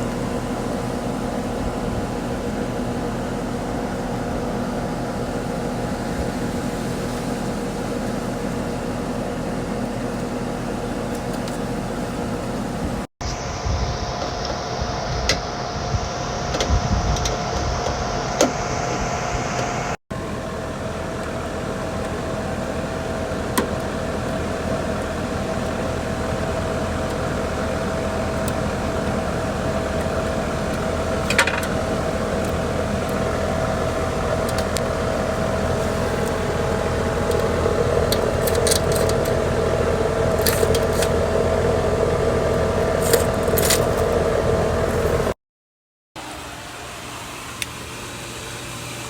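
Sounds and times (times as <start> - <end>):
mechanical hum of equipment: 0.0 - 45.4, 46.2 - 49.0
tools clicking and rattling: 38.1 - 39.4.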